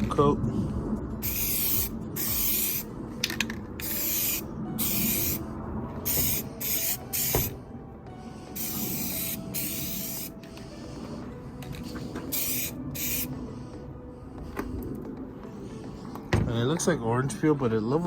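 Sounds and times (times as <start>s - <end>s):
spray paint can hissing: 1.2s - 2.9s, 3.8s - 5.4s, 6.0s - 7.6s, 8.5s - 10.5s, 11.9s - 13.3s.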